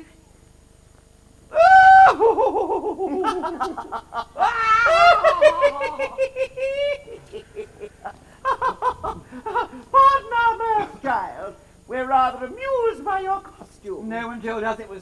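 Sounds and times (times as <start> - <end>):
people laughing mockingly: 1.6 - 10.5.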